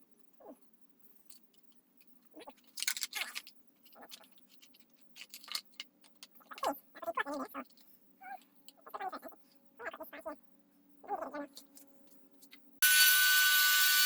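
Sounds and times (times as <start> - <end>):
clicks and rattles of handling: 1.2 - 6.7.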